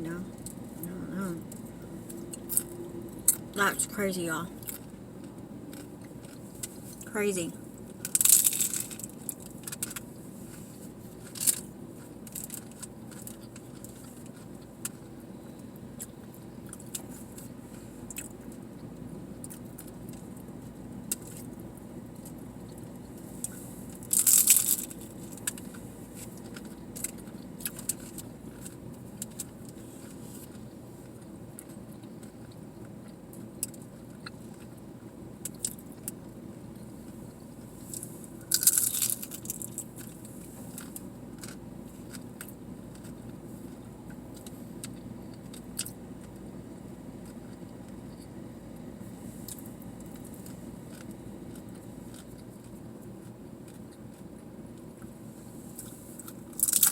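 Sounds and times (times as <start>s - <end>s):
low car cabin hum: 0.0s - 12.2s
chewing and biting food: 7.9s - 48.4s, 49.4s - 56.9s
loud food crunches: 8.0s - 10.1s, 23.4s - 29.5s, 37.9s - 43.8s, 55.8s - 56.9s.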